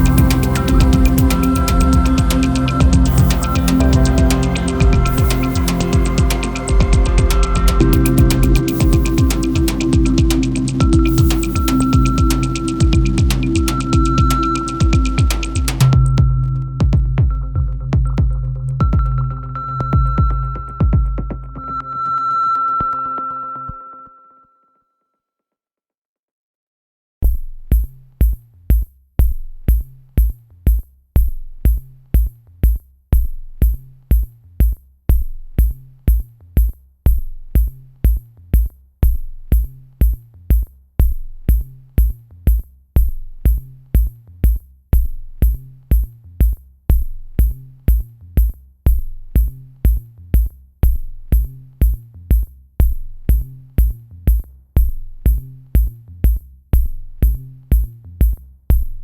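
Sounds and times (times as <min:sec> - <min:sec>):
electronic music with drum-machine beat: 0:00.0 - 0:23.0.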